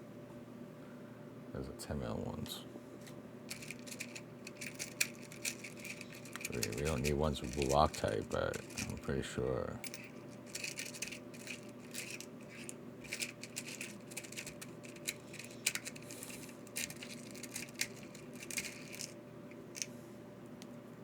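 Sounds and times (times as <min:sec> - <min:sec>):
metal screws clicking and rattling: 0:03.5 - 0:09.0, 0:09.8 - 0:19.9.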